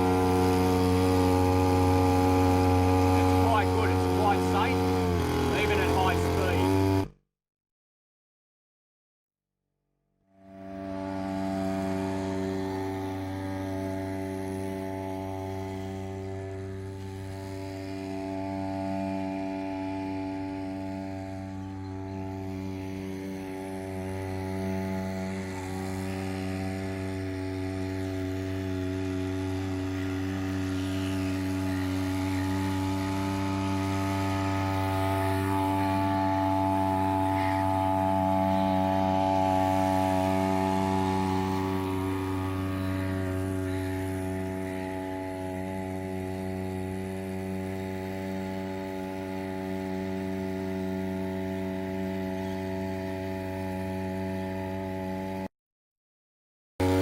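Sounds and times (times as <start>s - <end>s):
two-stroke outboard motor running: 0.0s - 7.2s, 10.3s - 55.5s, 56.8s - 57.0s.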